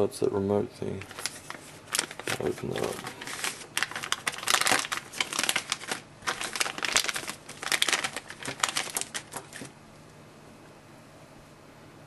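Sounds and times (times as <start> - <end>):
packaging crinkling: 1.0 - 9.7.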